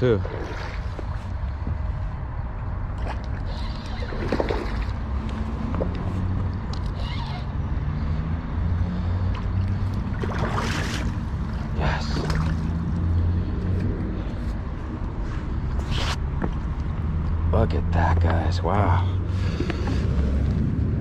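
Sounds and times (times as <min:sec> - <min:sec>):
steady low rumble: 0:00.0 - 0:03.5
fish splashing at water surface: 0:09.4 - 0:11.3.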